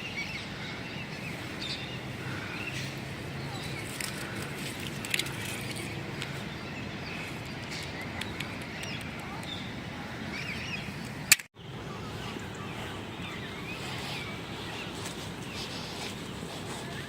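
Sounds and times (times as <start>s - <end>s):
outdoor background hiss: 0.0s - 17.0s
small birds chirping: 0.0s - 17.0s
sharp click: 11.3s - 11.5s.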